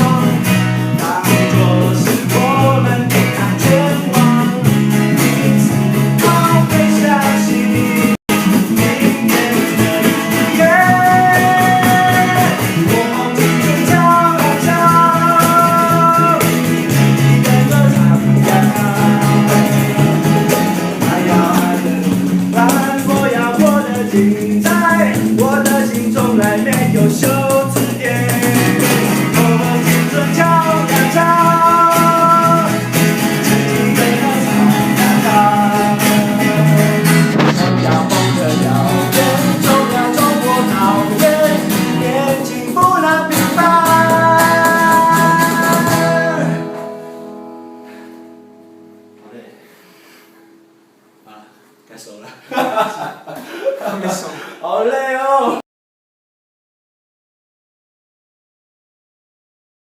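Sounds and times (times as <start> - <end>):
band playing a song: 0.0 - 47.4
steady bass line: 0.0 - 47.6
guitar melody: 0.0 - 51.8.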